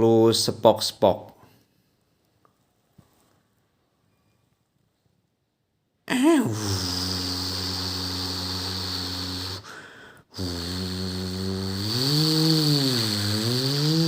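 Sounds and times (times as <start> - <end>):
person imitating a diesel engine: 6.1 - 14.0.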